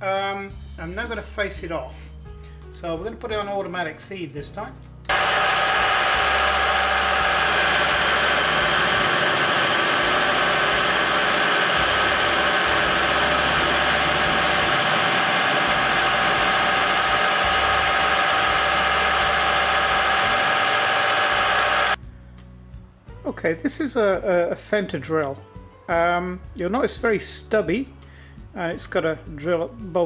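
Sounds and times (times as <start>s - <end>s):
metal lathe running: 5.1s - 22.0s.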